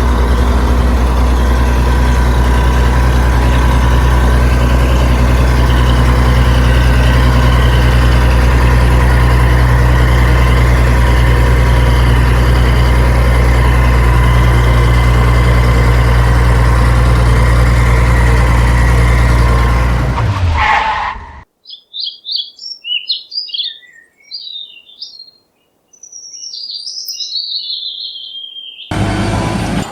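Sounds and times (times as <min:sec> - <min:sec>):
engine idling: 0:00.0 - 0:20.6, 0:28.9 - 0:29.9.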